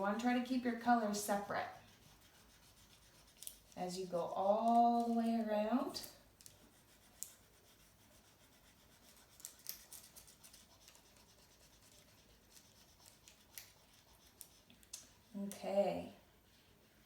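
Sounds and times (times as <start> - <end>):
marker scratching on paper: 0.0 - 5.4, 6.4 - 15.8.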